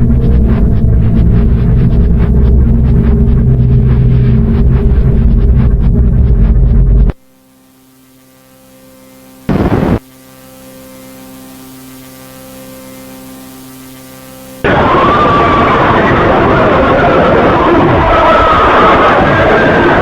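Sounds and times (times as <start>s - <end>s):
loud low rumble: 0.0s - 7.2s, 14.6s - 20.0s
steady electrical hum: 0.0s - 17.1s
harsh noise with wavering tone: 0.0s - 20.0s
burst of static: 9.2s - 20.0s.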